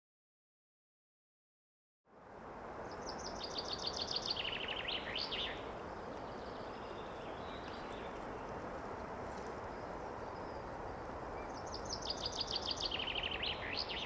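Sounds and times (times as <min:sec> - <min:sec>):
wind through trees: 0:02.1 - 0:14.0
songbird singing: 0:02.8 - 0:14.0.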